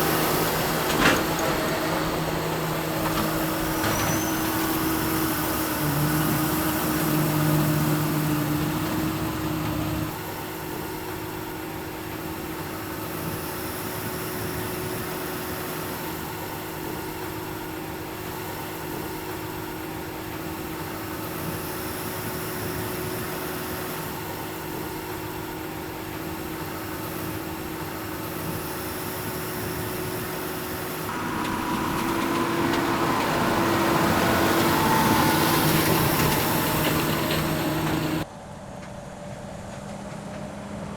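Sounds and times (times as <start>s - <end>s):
baler machine drone: 0.0s - 11.5s, 28.4s - 38.6s
tractor engine running: 0.0s - 13.4s, 29.3s - 40.9s.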